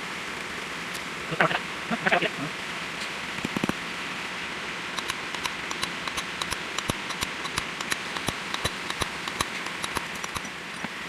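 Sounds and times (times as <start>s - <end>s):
steady background hiss: 0.0s - 11.0s
hammer tapping on metal: 5.0s - 10.5s.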